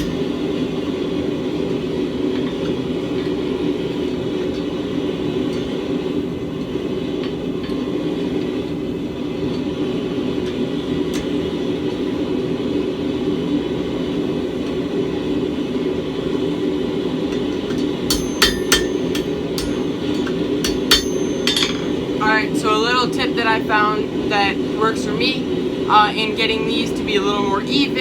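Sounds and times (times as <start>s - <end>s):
hammer blows on hot steel: 0.0s - 1.0s, 17.3s - 22.2s.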